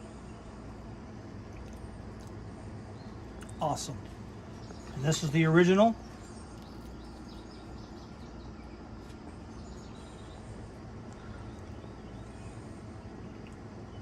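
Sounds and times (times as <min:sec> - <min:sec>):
faint bird chirps: 0:02.9 - 0:14.0.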